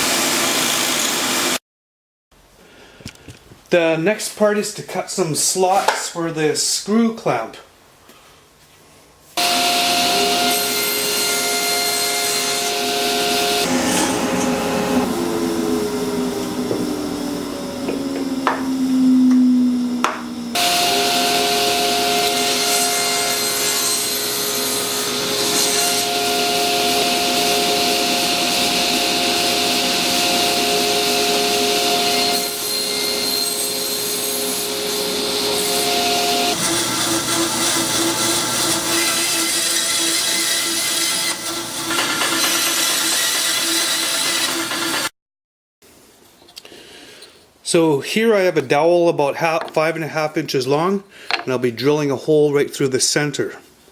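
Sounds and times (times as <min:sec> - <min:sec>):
power tool cutting plywood: 0:00.0 - 0:01.6, 0:09.4 - 0:45.1.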